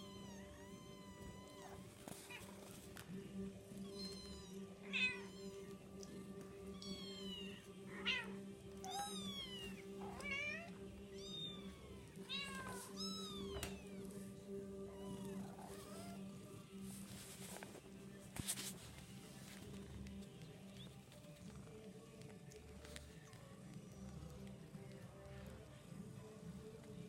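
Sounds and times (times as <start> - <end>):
kittens mewing: 0.0 - 2.8, 6.6 - 14.2.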